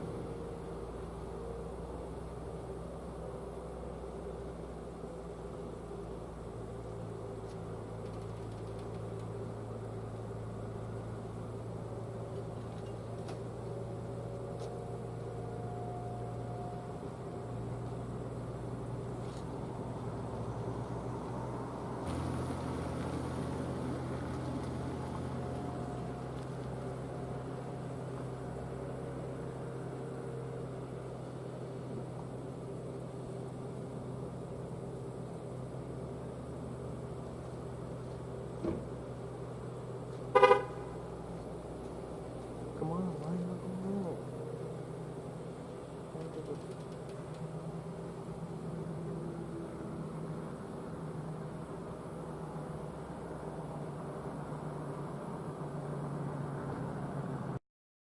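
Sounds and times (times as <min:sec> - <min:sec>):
constant low hum: 0:00.0 - 0:57.6
distant warning sirens: 0:10.5 - 0:31.9.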